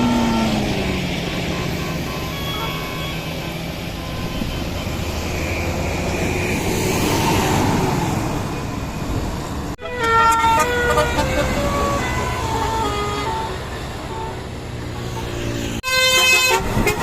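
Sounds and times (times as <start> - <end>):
road traffic noise: 0.0 - 17.0
large vehicle engine passing: 4.6 - 9.8.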